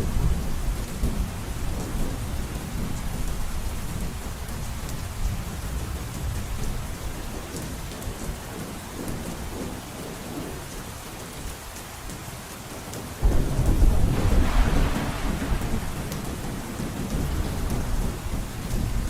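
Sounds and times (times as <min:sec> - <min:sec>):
heavy rain on a roof: 0:00.0 - 0:19.0
low rumble: 0:13.2 - 0:19.0
thunder rolling: 0:13.2 - 0:19.0.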